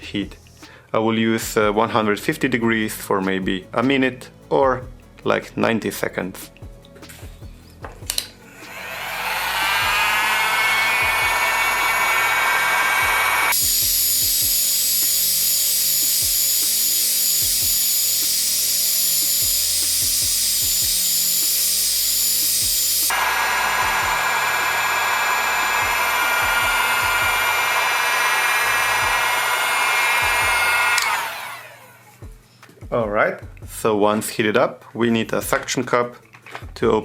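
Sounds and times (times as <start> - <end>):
heat gun fan whine: 8.1 - 32.1
heat gun switch click: 25.6 - 31.6.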